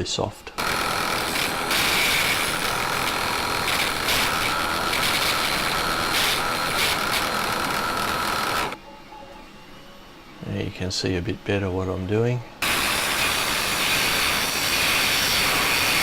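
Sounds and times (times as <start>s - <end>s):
lathe motor hum: 0.6s - 8.8s.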